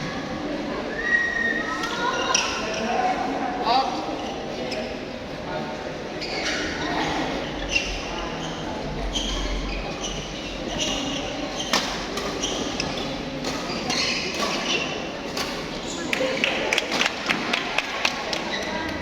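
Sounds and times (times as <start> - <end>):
shoes squeaking on court floor: 6.2 - 16.1.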